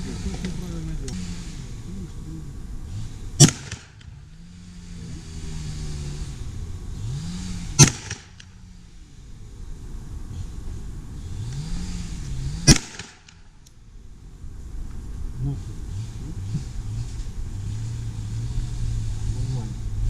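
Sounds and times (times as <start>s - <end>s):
low motor hum: 0.0s - 20.0s
gunshots: 3.4s - 4.1s, 7.8s - 8.5s, 12.6s - 13.4s.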